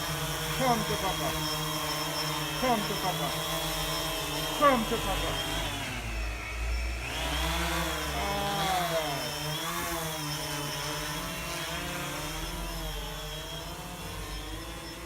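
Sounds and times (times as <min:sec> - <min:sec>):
drone propellers whirring: 0:00.0 - 0:15.0.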